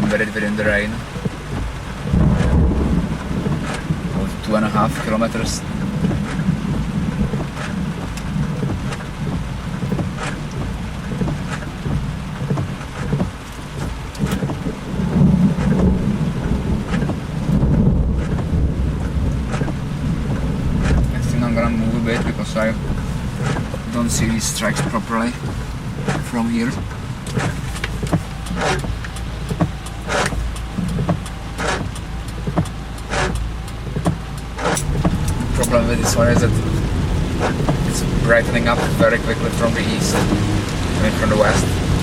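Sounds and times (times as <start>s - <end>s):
car hum: 0.0s - 42.0s
rain falling: 0.0s - 42.0s
windshield wipers swishing: 0.0s - 42.0s
wiper clicks: 0.0s - 42.0s
drops ticking: 1.0s - 42.0s
low rumble of thunder: 1.5s - 12.6s, 14.5s - 26.0s, 34.8s - 42.0s.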